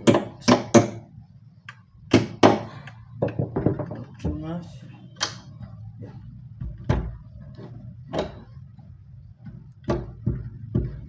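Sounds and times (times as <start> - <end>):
wooden cabinet door knocking shut: 9.8 - 11.0.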